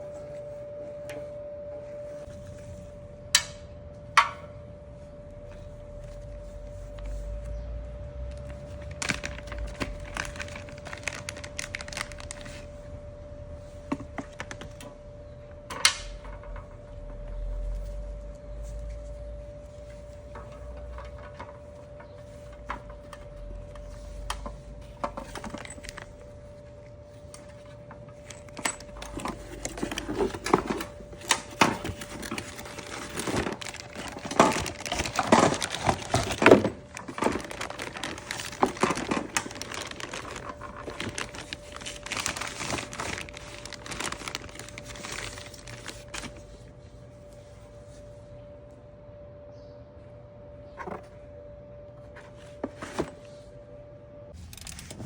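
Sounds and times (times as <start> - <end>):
steady hum: 0.0 - 55.0
crinkling: 5.1 - 13.0, 15.8 - 48.0
clicks and metallic rattles: 54.4 - 55.0.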